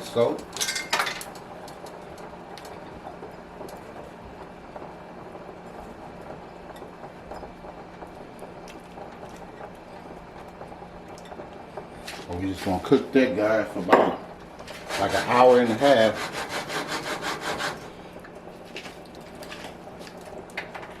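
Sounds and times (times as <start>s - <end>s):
pot bubbling: 0.0s - 21.0s.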